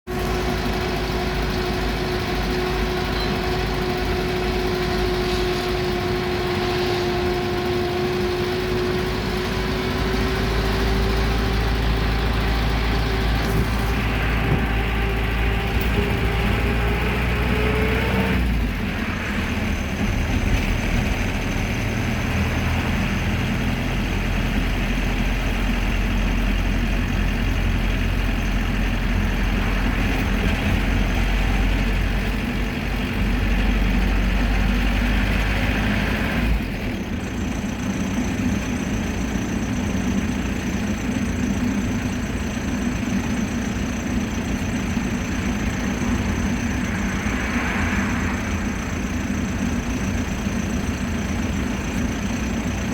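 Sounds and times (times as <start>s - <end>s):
minibus engine rumble: 0.1s - 52.9s
steady high whine: 37.6s - 52.9s.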